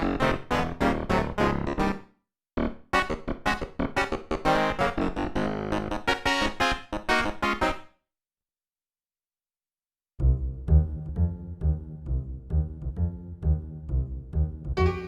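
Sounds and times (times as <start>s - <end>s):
synthesizer piano-like chords: 0.0s - 2.0s, 3.0s - 7.8s, 10.2s - 15.0s.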